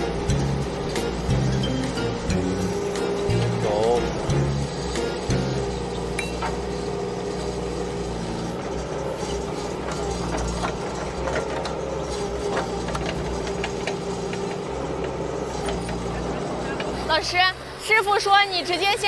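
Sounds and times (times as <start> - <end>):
diesel engine running: 0.0 - 19.0
machine clanks and knocks: 9.4 - 16.1.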